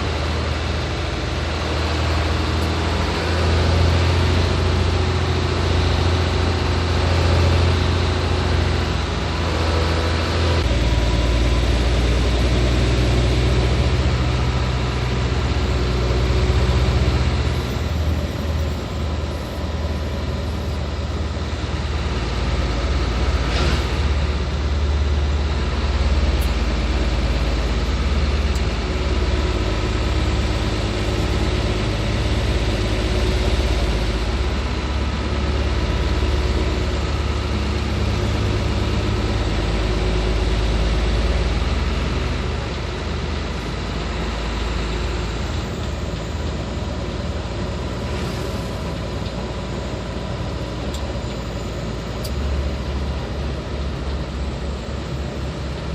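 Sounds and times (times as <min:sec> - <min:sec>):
road noise: 0:00.0 - 0:55.9
truck diesel engine rumbling: 0:00.0 - 0:55.9.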